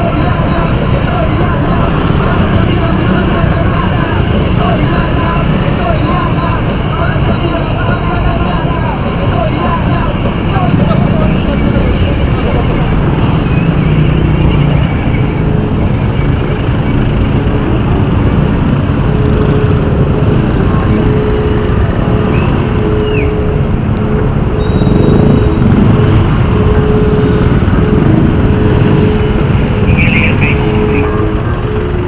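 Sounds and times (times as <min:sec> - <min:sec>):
motor vehicles passing: 0:00.0 - 0:32.0
wind rumble on microphone: 0:15.0 - 0:32.0.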